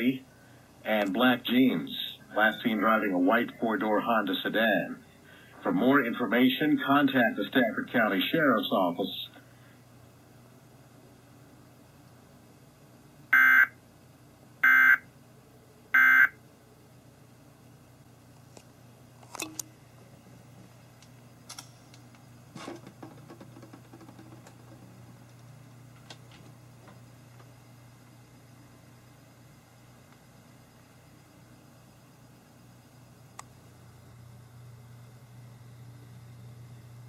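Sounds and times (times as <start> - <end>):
faint clicks and knocks: 21.0 - 27.6.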